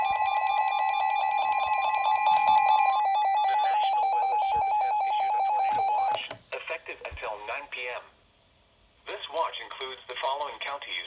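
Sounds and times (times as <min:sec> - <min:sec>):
electronic alarm tone: 0:00.0 - 0:06.3.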